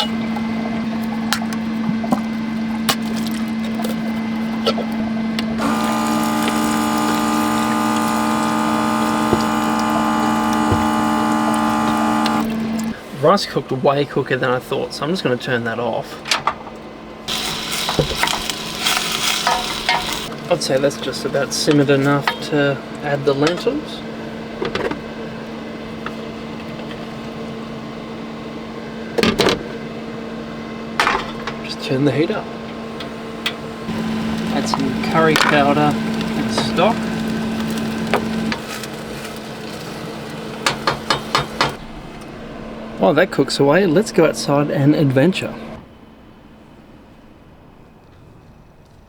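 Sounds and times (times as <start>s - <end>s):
steady mechanical hum: 0.0s - 49.0s
steady low hum: 5.4s - 13.0s
small electric motor whining: 5.6s - 12.9s, 17.3s - 20.3s, 33.9s - 38.6s.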